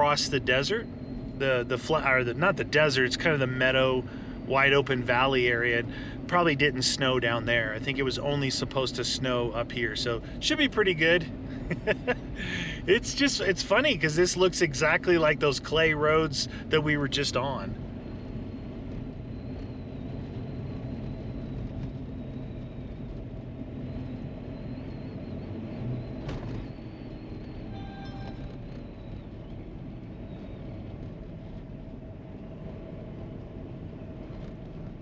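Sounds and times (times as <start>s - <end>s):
vehicle driving on dirt road: 0.0s - 35.0s
brief beep: 27.7s - 28.6s.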